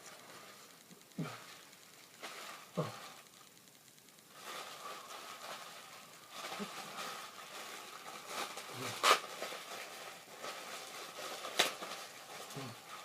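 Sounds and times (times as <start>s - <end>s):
packaging rustling: 4.2s - 13.0s.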